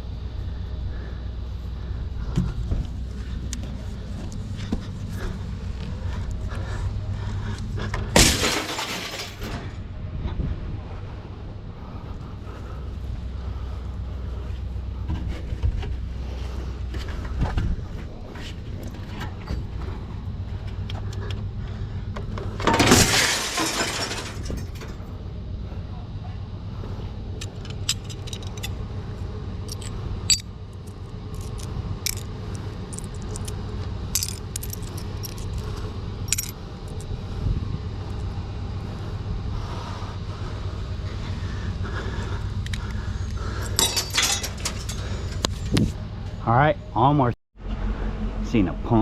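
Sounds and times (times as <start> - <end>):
steady low hum: 0.0 - 49.0
loud rustling crash: 8.1 - 9.7, 22.7 - 24.7
metallic clinks and rattles: 27.4 - 28.8, 29.6 - 37.1, 43.6 - 45.9.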